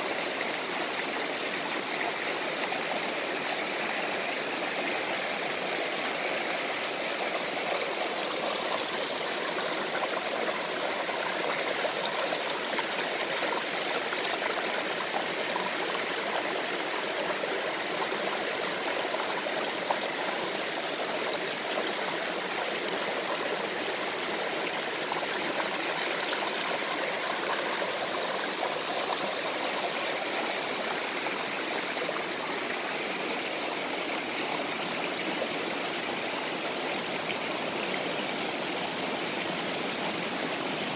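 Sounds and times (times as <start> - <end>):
waterfall and stream rushing: 0.0 - 40.9.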